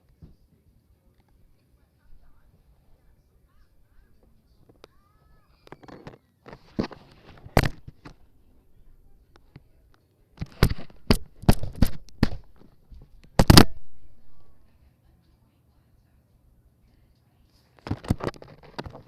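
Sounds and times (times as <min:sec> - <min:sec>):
sharp clicks and crackles: 0:09.3 - 0:13.9.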